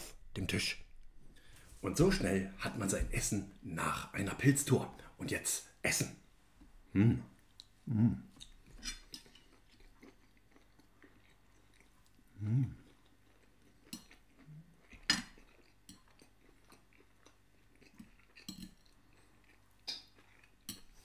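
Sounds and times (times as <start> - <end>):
person chewing and biting: 8.3 - 21.0.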